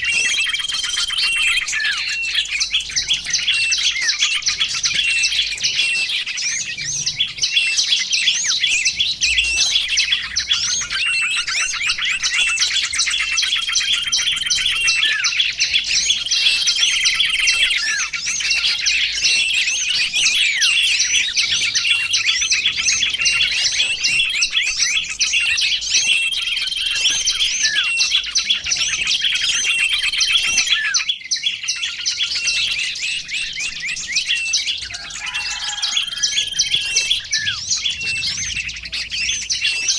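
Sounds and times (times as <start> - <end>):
songbirds chirping and twittering: 0.0 - 39.9.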